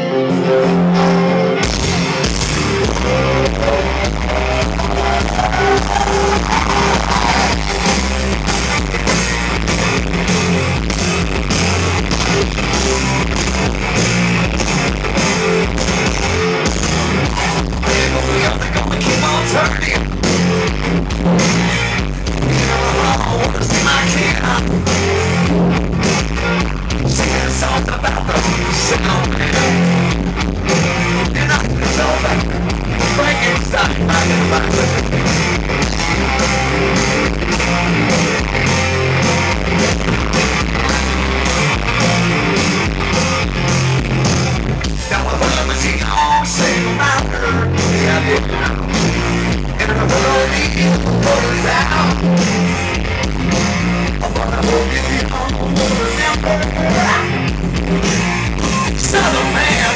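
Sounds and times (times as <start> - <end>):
person singing: 0.0 - 9.0, 17.3 - 20.1, 21.6 - 25.3, 27.0 - 30.1, 31.1 - 35.3, 45.0 - 52.7, 54.2 - 57.5, 58.8 - 59.9
drums: 0.0 - 59.9
electric guitar: 0.0 - 59.9.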